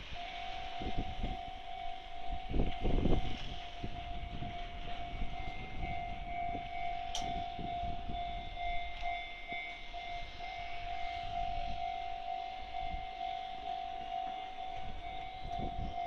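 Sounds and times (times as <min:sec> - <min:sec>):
level-crossing warning bell: 0:00.0 - 0:16.0.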